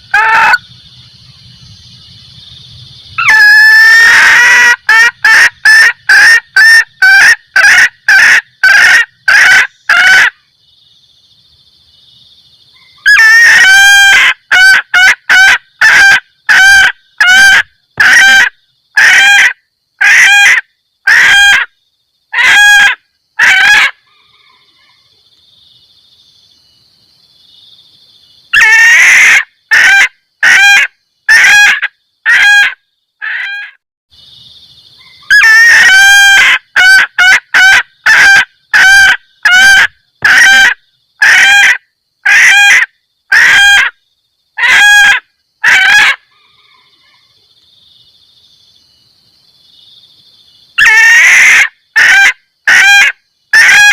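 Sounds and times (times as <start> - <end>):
junglefowl hen kek calls: 0.0 - 0.7, 3.2 - 10.4, 12.8 - 25.1, 28.5 - 33.8, 35.0 - 44.0, 44.6 - 47.4, 50.8 - 53.9.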